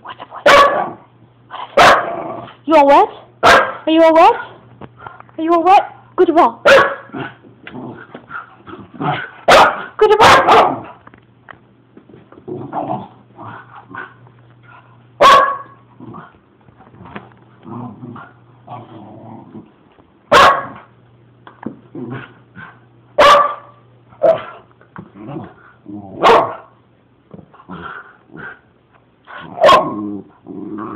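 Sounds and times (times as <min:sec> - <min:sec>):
dog barking: 0:00.4 - 0:01.0, 0:01.8 - 0:02.2, 0:03.4 - 0:03.8, 0:06.6 - 0:07.1, 0:09.5 - 0:10.9, 0:15.2 - 0:15.8, 0:20.3 - 0:20.9, 0:23.2 - 0:24.5, 0:26.2 - 0:26.8, 0:29.6 - 0:30.0
dog growling: 0:02.0 - 0:02.6, 0:07.1 - 0:09.3, 0:12.4 - 0:14.2, 0:16.0 - 0:16.4, 0:17.0 - 0:19.8, 0:21.9 - 0:22.8, 0:25.1 - 0:26.3, 0:27.6 - 0:28.7, 0:29.4 - 0:30.9.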